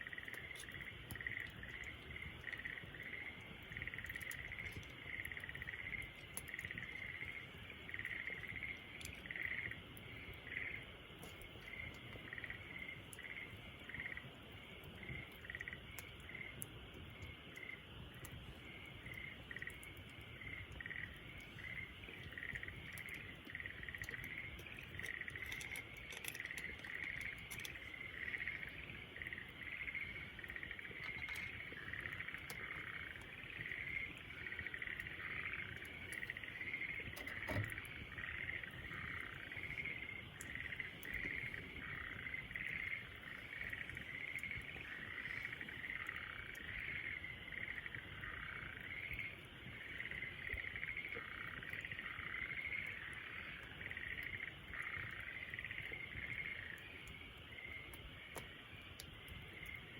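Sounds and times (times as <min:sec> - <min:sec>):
campfire crackling: 0:00.0 - 0:59.9
frogs and insects chirping: 0:00.0 - 0:59.9.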